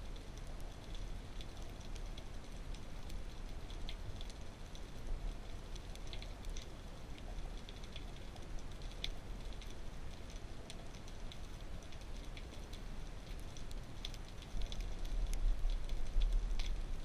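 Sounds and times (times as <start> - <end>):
clicks and crackles: 0.0 - 17.0
underwater low rumble: 0.0 - 17.0.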